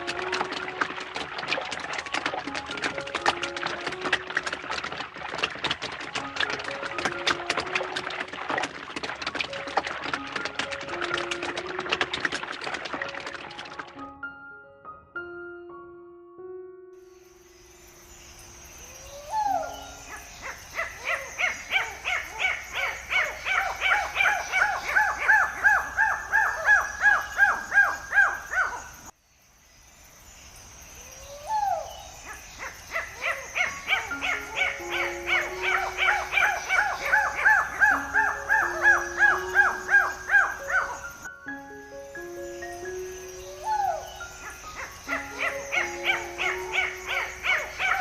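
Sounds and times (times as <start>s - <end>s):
low sustained music notes: 0.0s - 4.9s, 34.1s - 48.0s.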